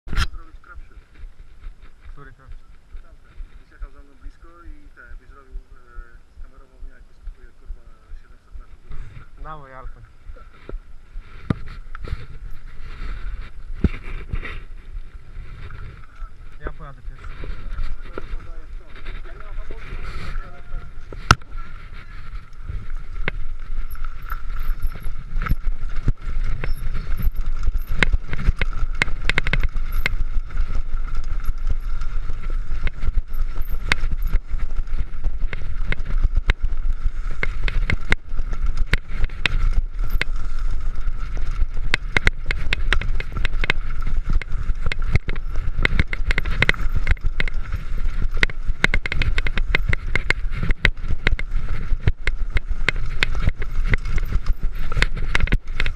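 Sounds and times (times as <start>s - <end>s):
bike rattling over rough trail: 0.1s - 55.9s
steady thin whine: 0.1s - 55.9s
wind on microphone: 0.1s - 55.9s.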